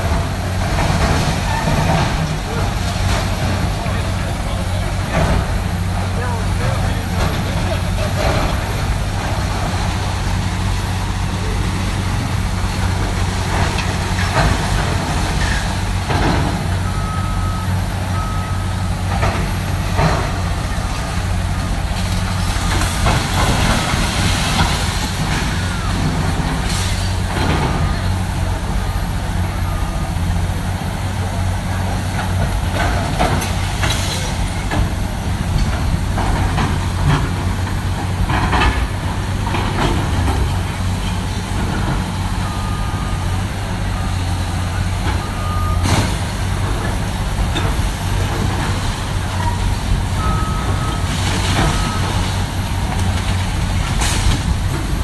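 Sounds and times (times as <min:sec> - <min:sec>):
diesel engine running: 0:00.0 - 0:55.0
short backup beeps: 0:50.2 - 0:51.0.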